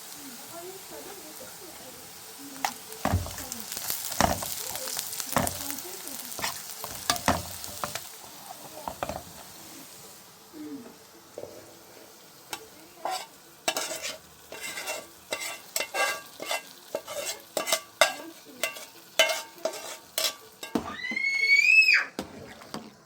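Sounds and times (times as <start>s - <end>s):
faint frying sizzle: 0.0s - 23.0s
metal spoon scraping pot: 2.6s - 5.7s, 6.3s - 8.1s, 12.5s - 20.9s, 22.2s - 23.0s.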